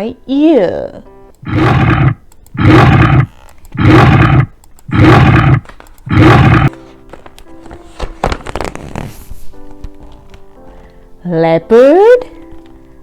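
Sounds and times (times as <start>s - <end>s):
leopard snarling: 1.4s - 6.7s.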